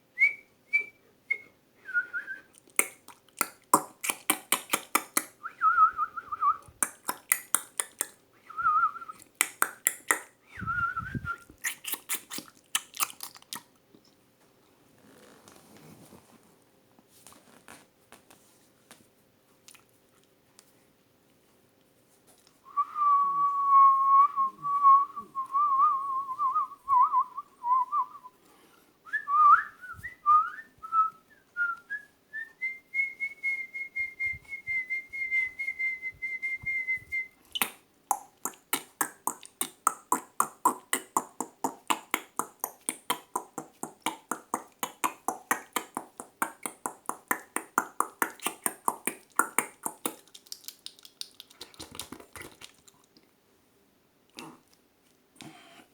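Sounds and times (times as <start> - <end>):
person whistling like birdsong: 0.2 - 2.5, 5.4 - 6.6, 8.5 - 9.2, 10.5 - 11.5, 22.7 - 28.4, 29.1 - 37.7.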